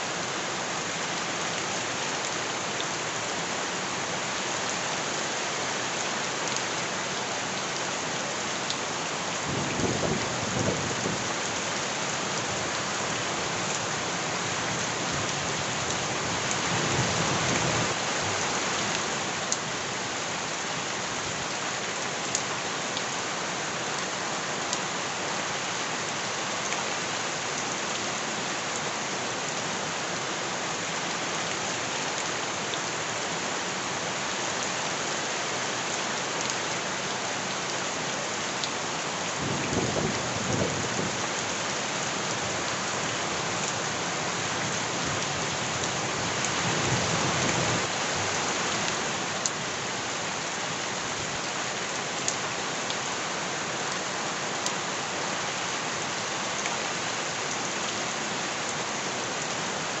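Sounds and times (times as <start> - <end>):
heavy rain hissing: 7.3 - 21.5, 36.9 - 51.5.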